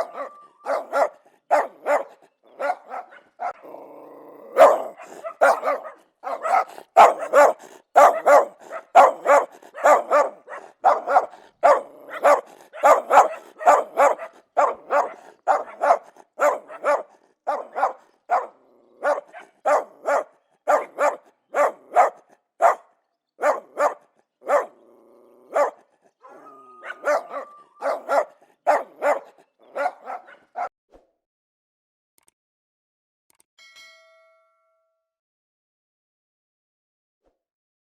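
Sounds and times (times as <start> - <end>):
dog whining: 0.0 - 3.7, 24.5 - 30.2
dog barking aggressively: 0.0 - 30.7.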